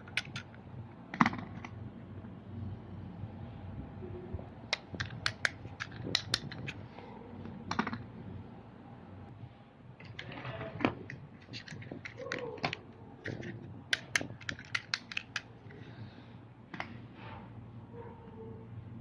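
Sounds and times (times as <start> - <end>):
plastic toy trucks clicking: 0.0 - 0.6, 4.8 - 6.8, 10.0 - 15.8.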